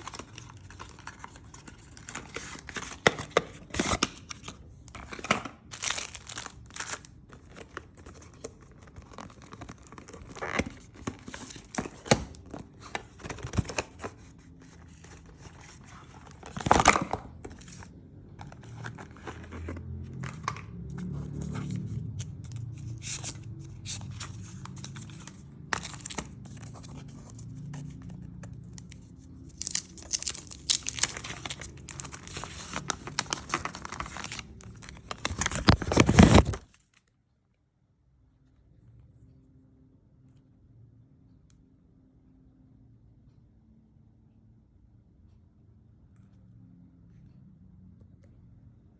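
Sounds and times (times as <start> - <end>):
plastic wrap tearing and crinkling: 0.0 - 14.0, 29.4 - 36.7.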